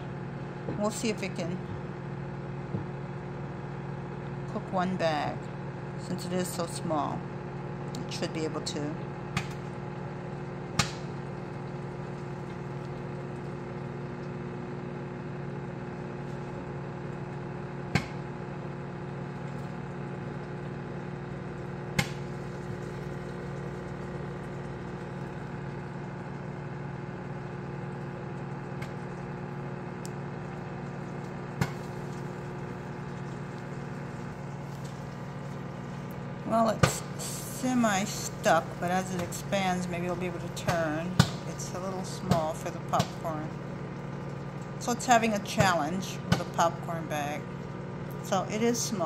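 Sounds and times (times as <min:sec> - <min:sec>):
microwave oven humming: 0:00.0 - 0:49.0.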